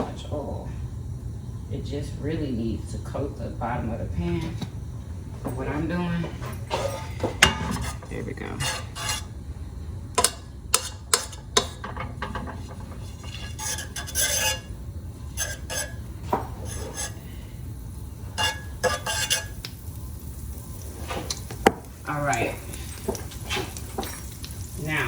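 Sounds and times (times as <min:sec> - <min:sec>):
metal pan and utensils clattering: 0:06.4 - 0:09.3, 0:10.2 - 0:14.7, 0:15.3 - 0:17.2, 0:18.3 - 0:19.6.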